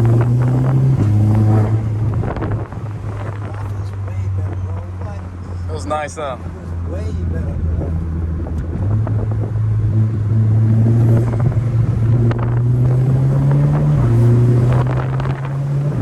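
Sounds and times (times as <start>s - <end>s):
car engine accelerating: 0.0s - 16.0s.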